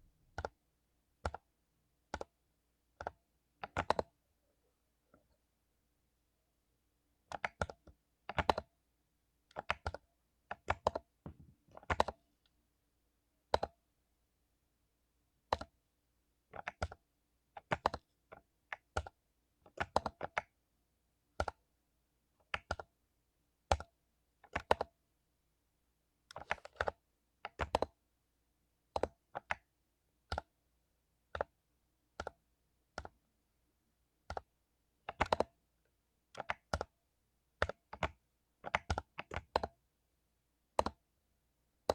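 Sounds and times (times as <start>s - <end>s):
mechanical keyboard typing: 1.2s - 1.4s, 3.0s - 4.1s, 7.3s - 8.7s, 9.5s - 12.2s, 13.5s - 13.7s, 15.5s - 15.8s, 16.6s - 17.0s, 17.6s - 18.1s, 18.7s - 20.5s, 21.4s - 21.6s, 23.7s - 24.9s, 26.3s - 27.9s, 32.2s - 32.4s, 34.2s - 35.6s, 36.3s - 37.0s, 37.6s - 39.8s, 40.7s - 41.0s.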